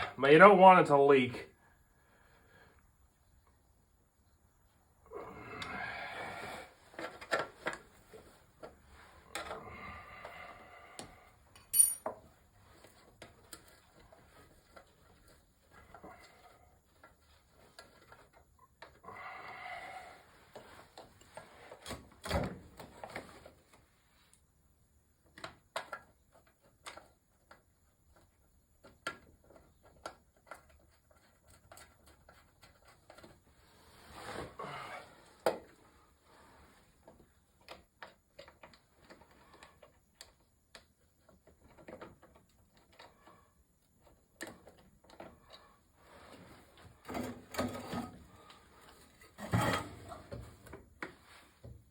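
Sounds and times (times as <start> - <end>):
tools clicking and knocking: 11.5 - 12.2
ringing metal clink: 11.6 - 12.1.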